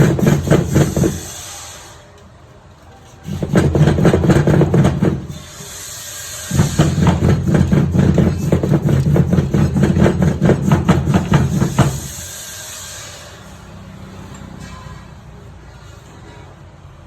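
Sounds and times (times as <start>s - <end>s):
tractor diesel engine knocking: 0.0s - 1.3s, 3.3s - 5.4s, 6.5s - 12.3s.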